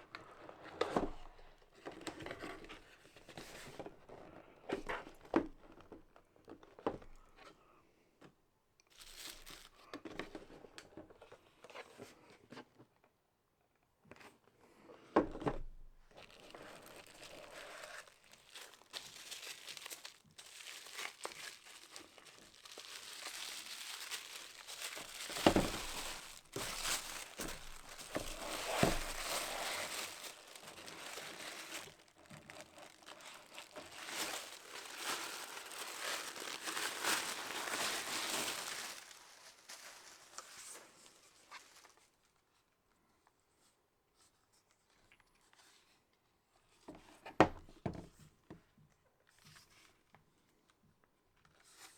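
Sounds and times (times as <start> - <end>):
plastic and paper crinkling: 8.9 - 10.1, 16.0 - 42.2
packaging knocks: 18.5 - 39.0.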